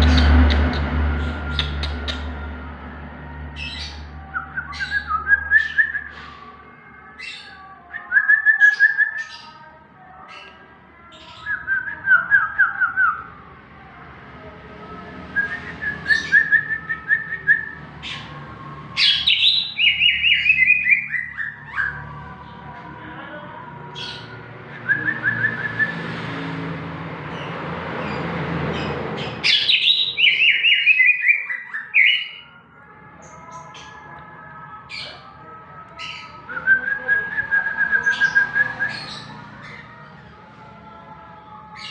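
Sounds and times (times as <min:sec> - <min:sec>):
bird singing chirps and trills: 0:00.0 - 0:02.4, 0:15.6 - 0:22.6, 0:27.2 - 0:32.6.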